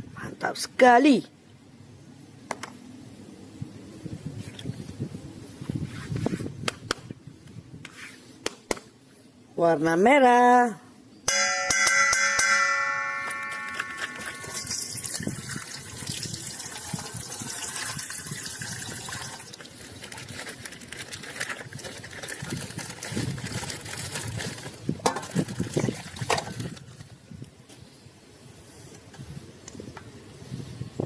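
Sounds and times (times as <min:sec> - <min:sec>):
ringing chime: 0:11.3 - 0:14.9
toy packaging crackling and rustling: 0:19.3 - 0:27.1.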